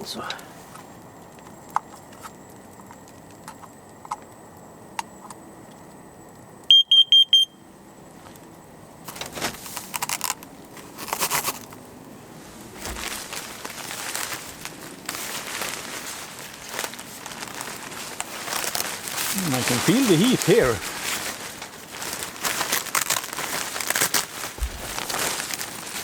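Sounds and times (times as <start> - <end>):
carbon monoxide detector beeps: 6.7 - 7.7
rustling handling noise: 9.0 - 26.0.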